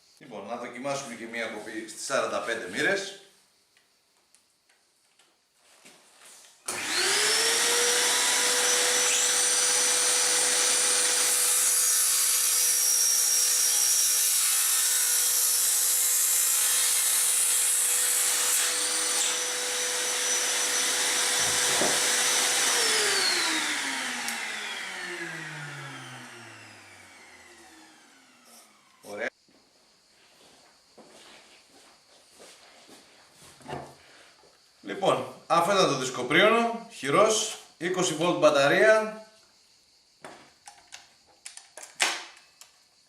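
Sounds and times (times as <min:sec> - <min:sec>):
circular saw cutting wood: 0:06.7 - 0:29.3.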